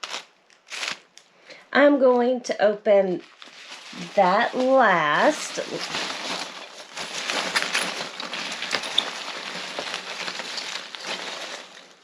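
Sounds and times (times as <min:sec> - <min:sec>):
paper packaging rustling: 0:00.0 - 0:01.2, 0:03.2 - 0:12.0.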